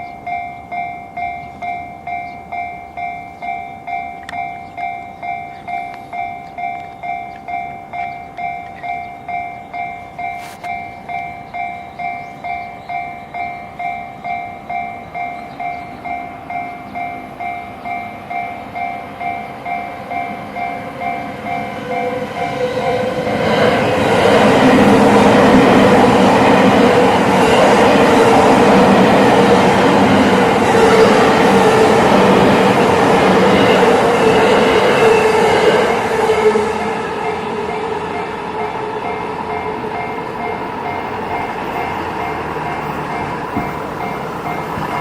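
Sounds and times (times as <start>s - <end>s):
electric train passing: 0.0s - 45.0s
level crossing warning bell: 0.0s - 45.0s
train wheel clatter: 36.8s - 45.0s.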